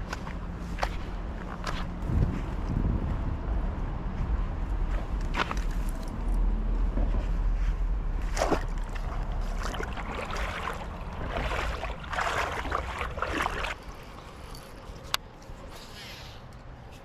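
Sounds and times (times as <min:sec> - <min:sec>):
wind buffeting microphone: 0:00.8 - 0:13.8.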